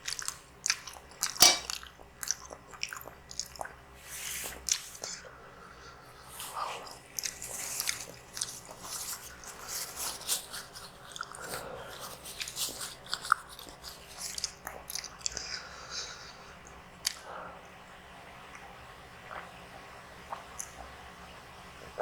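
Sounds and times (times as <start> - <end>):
close chewing with mouth clicks: 2.2 - 3.8, 6.3 - 17.2, 20.3 - 21.0.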